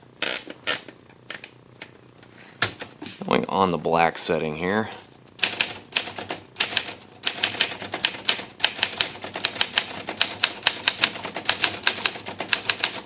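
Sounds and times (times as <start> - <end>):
manual typewriter typing: 5.4 - 13.0.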